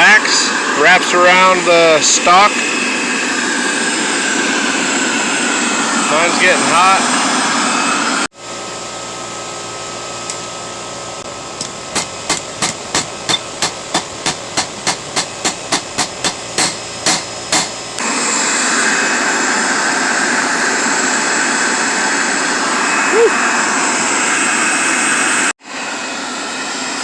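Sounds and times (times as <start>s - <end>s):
hammer striking steel on anvil: 11.6s - 17.8s.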